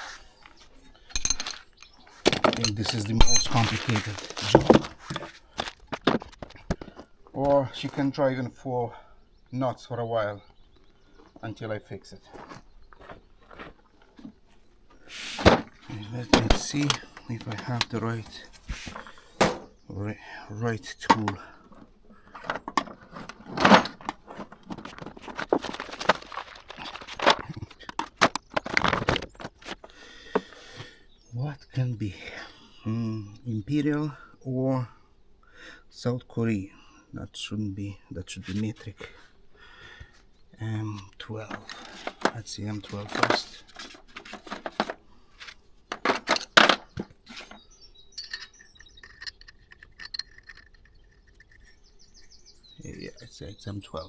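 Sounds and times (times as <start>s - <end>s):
birds chirping faintly: 0.0s - 54.0s
small metal parts clinking: 1.0s - 5.7s, 15.8s - 18.2s, 21.1s - 29.4s, 42.9s - 52.8s
metal hand tools clinking: 1.1s - 4.6s, 16.1s - 18.2s, 45.9s - 52.6s.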